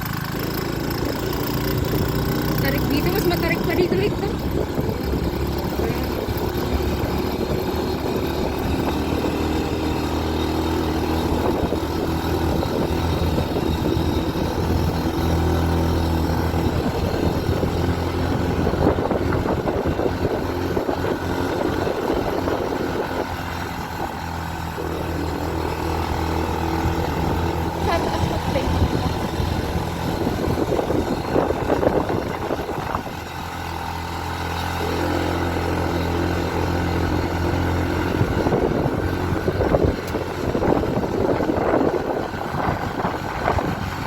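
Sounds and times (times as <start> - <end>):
motorcycle engine climbing uphill: 0.0 - 44.0.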